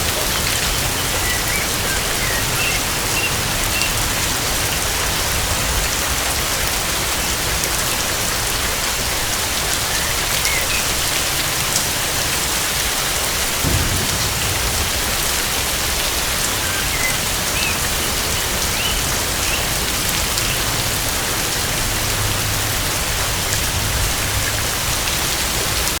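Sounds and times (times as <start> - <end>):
heavy rain on foliage: 0.0 - 26.0
thunder rumbling: 13.2 - 25.2.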